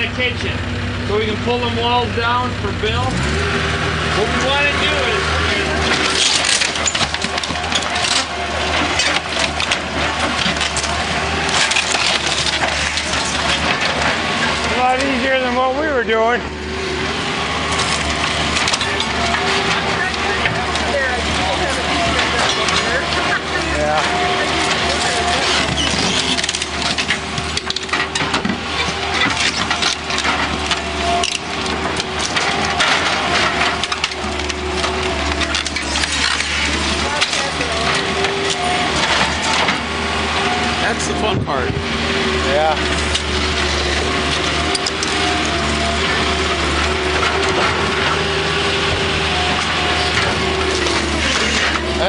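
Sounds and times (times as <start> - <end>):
engine running: 0.0 - 52.0
steady low drone: 0.0 - 52.0
wood cracking and splintering: 1.8 - 52.0.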